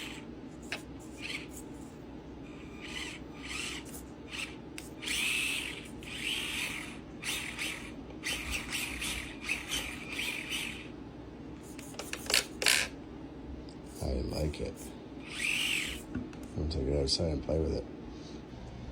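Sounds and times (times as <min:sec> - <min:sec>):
small motor and gears whirring: 0:00.0 - 0:10.9, 0:11.6 - 0:13.0, 0:13.9 - 0:16.1.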